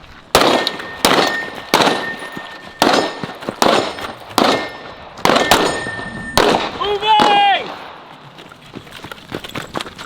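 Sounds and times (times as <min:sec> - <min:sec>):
handgun shots: 0:00.4 - 0:02.2, 0:02.8 - 0:07.8
steel target clanging: 0:00.6 - 0:06.5.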